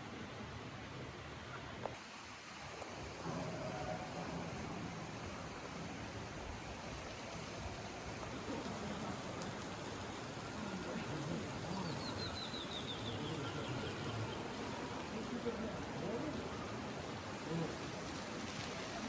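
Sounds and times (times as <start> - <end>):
water rushing and splashing: 0.0 - 19.0
bird singing: 11.7 - 14.6.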